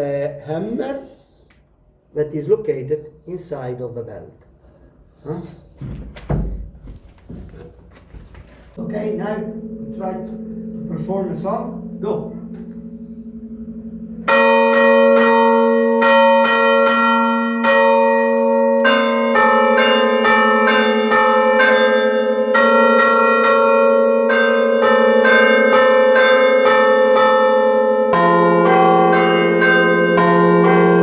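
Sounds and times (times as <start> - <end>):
church bells playing a tune: 8.8 - 31.0.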